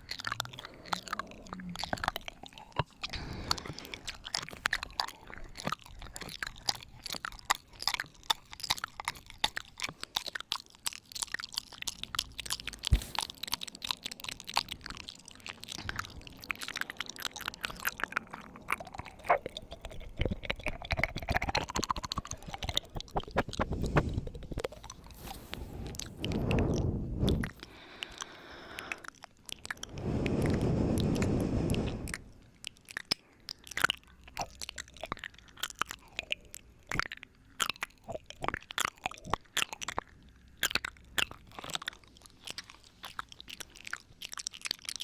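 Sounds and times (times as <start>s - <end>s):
lip smacks: 0.0s - 45.0s
tongue clicks: 0.0s - 45.0s
wet mouth noises: 0.0s - 45.0s.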